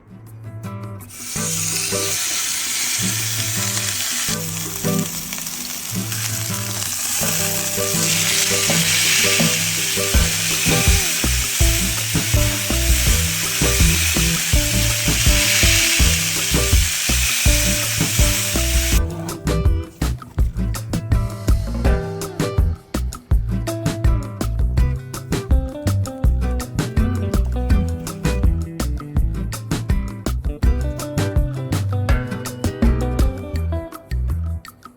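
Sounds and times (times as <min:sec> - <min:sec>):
meat sizzling: 0:01.1 - 0:19.0
background music with bass and beat: 0:07.2 - 0:34.9.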